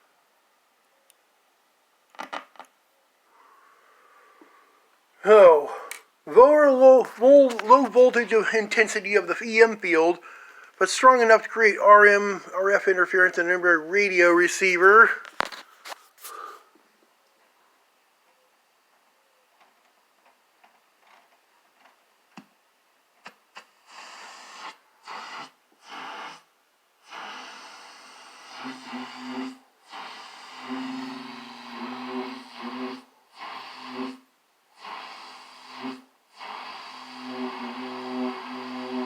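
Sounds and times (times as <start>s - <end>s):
radio static: 6.3s - 16.5s
low buzz from radio: 28.4s - 33.1s.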